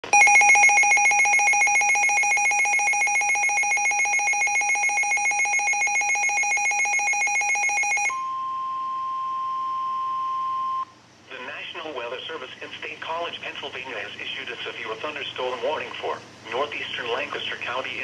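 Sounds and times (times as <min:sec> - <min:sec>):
steady warning alarm tone: 0:00.0 - 0:10.8
weather radio alert siren: 0:00.1 - 0:08.5.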